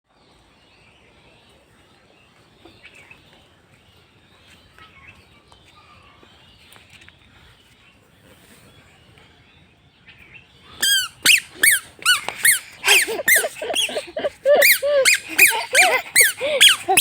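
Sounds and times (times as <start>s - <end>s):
outdoor background noise: 0.1s - 17.0s
birds chirping: 10.8s - 17.0s.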